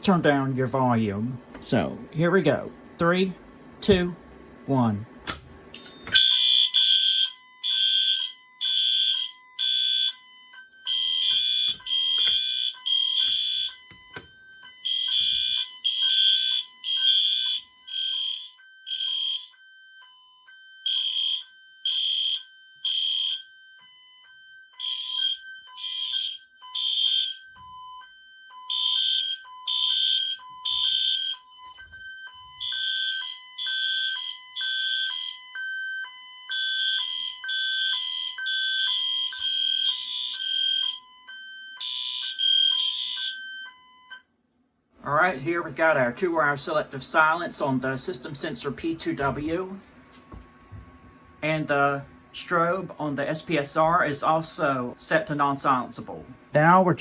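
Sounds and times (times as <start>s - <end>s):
fire alarm horn blasts: 5.3s - 44.3s
regular beeping tone: 5.8s - 44.3s.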